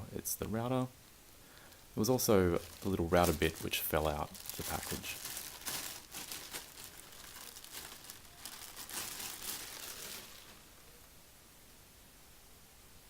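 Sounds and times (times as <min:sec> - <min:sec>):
packaging crinkling and rustling: 0:02.0 - 0:11.0.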